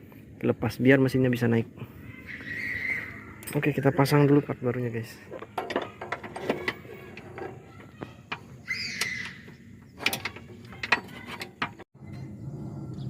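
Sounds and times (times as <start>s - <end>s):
hand tools clinking on metal: 9.9s - 11.9s.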